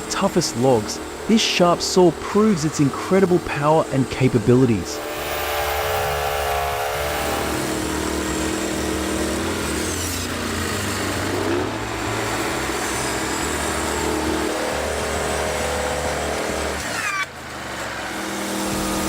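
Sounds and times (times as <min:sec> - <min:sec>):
power saw cutting log: 0:00.0 - 0:19.0.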